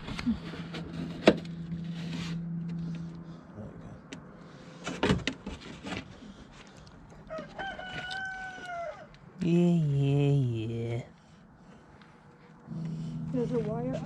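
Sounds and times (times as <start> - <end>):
steady low hum: 0.0 - 5.0, 9.5 - 14.0.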